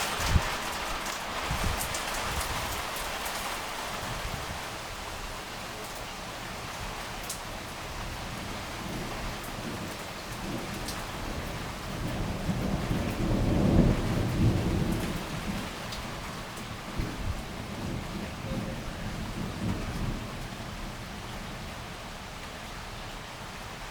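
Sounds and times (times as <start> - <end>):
thunder rolling: 0.0 - 3.0, 8.2 - 21.8
heavy rain: 0.0 - 23.9.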